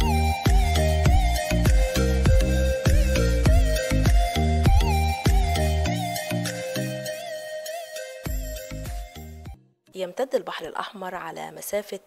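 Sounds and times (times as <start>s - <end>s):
pulsing bass line: 0.0s - 6.4s
sustained melody: 0.0s - 9.6s.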